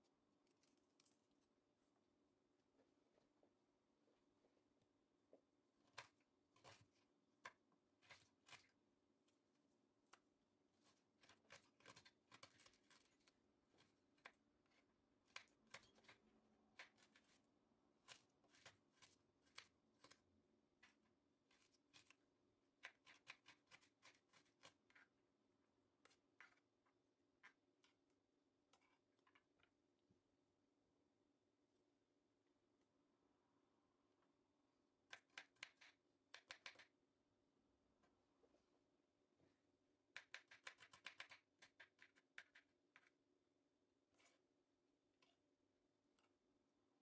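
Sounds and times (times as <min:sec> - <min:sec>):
knife cutting ingredients: 0:10.8 - 0:20.2, 0:22.8 - 0:25.2, 0:40.1 - 0:43.1.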